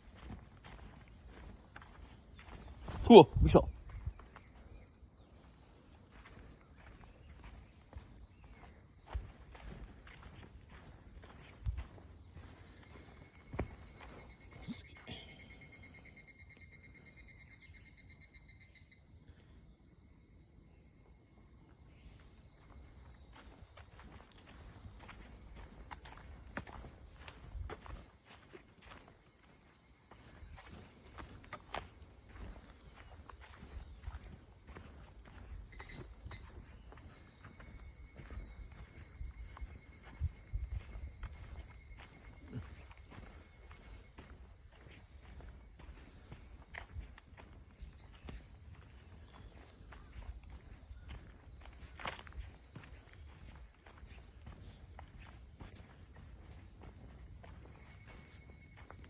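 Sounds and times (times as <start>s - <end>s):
footsteps on a path: 0.0s - 15.6s, 21.8s - 59.0s
high-pitched insect chorus: 0.0s - 59.0s.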